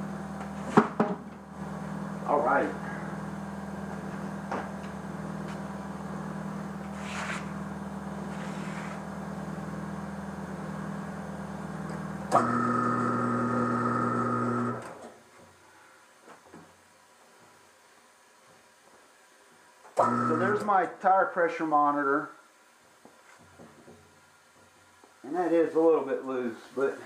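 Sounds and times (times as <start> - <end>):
electric motor humming: 11.9 - 14.8, 20.0 - 20.6.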